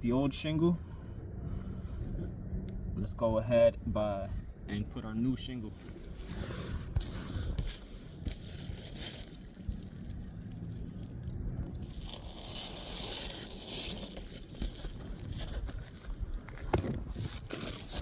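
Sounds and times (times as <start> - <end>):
shingles scraping and rustling: 5.8 - 18.0.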